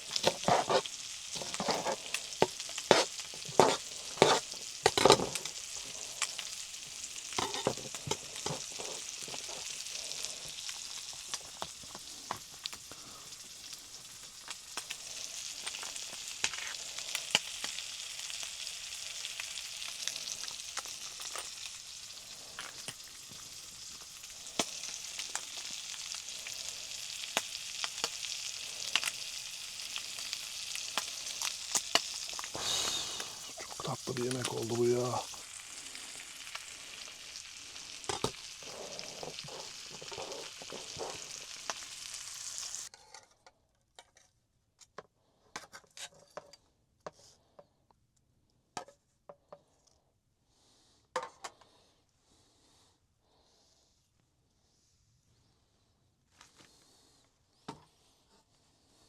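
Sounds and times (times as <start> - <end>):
food sizzling in frying pan: 0.0 - 42.9
utensil knocking in pan: 1.4 - 5.5.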